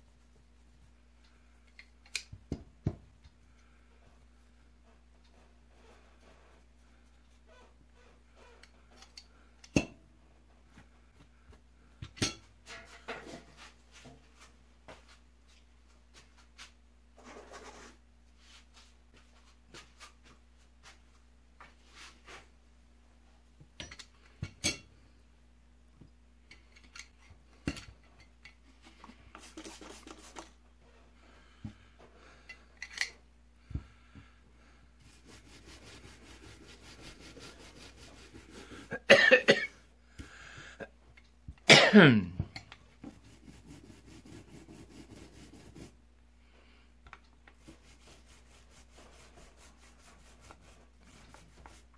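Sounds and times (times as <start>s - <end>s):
person coughing: 38.9s - 39.8s, 41.7s - 42.4s.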